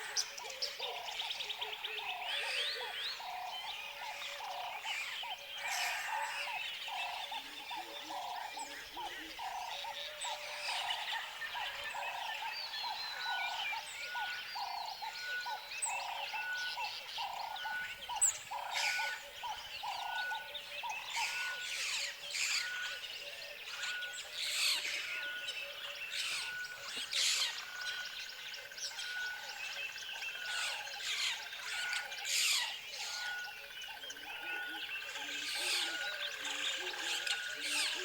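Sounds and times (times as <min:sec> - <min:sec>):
birds chirping and whistling: 0:09.8 - 0:38.0.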